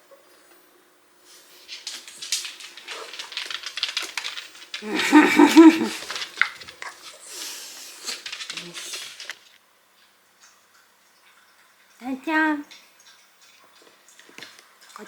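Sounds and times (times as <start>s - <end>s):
paws scrabbling and rustling: 1.4s - 9.6s.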